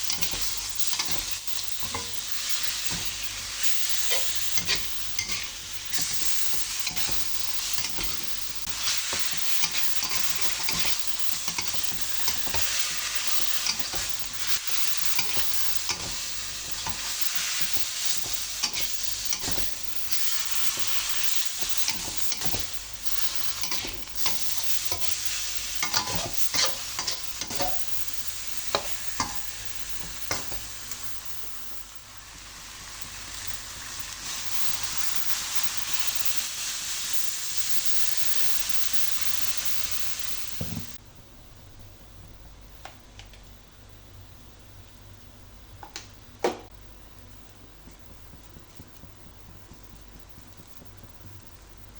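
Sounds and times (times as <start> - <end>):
spatula scraping a pan: 0.0 - 30.8
food sizzling in a pan: 0.0 - 41.0.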